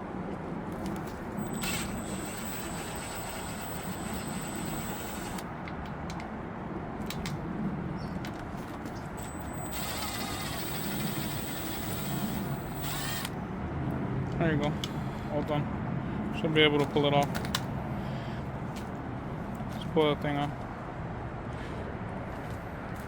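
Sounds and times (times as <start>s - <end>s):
power tool whining: 1.4s - 5.4s, 9.2s - 13.4s.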